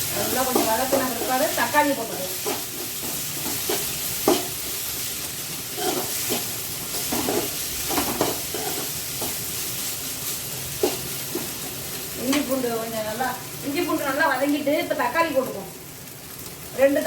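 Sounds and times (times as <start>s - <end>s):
onions sizzling in oil: 0.0s - 17.0s
spatula scraping a pan: 2.3s - 11.8s.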